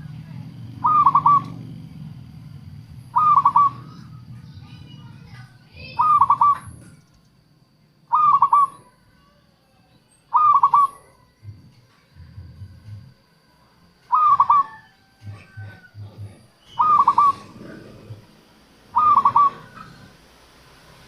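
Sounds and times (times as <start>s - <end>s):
dove cooing: 0.0s - 5.2s, 5.8s - 7.0s, 8.1s - 9.0s, 10.3s - 13.3s, 14.0s - 20.3s.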